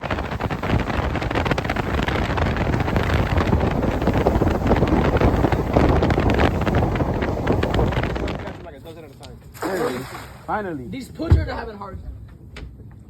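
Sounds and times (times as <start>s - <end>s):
wind buffeting microphone: 0.0s - 10.4s.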